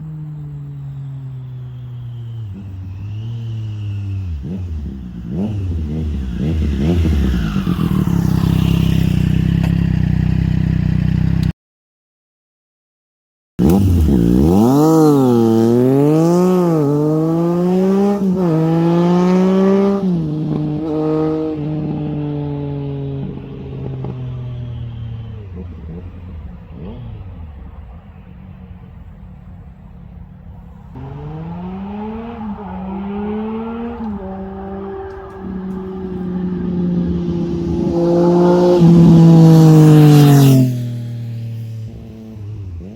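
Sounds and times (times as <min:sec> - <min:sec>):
motorcycle engine revving: 0:00.0 - 0:11.5, 0:13.6 - 0:42.9.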